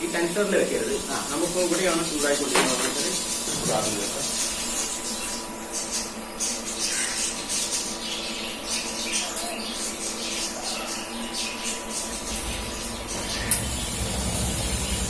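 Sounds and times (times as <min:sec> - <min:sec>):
welding arc buzzing and crackling: 0:00.0 - 0:05.4, 0:12.1 - 0:15.0.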